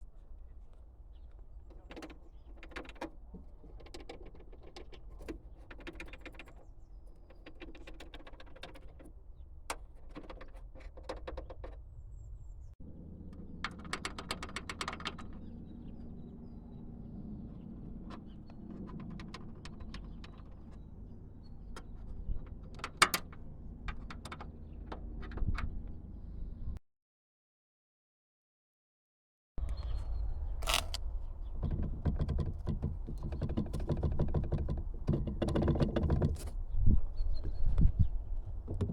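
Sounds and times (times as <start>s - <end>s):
rattling and clicking in car: 1.7s - 9.1s, 9.7s - 11.8s, 18.0s - 20.9s, 30.6s - 36.6s, 38.6s - 38.9s.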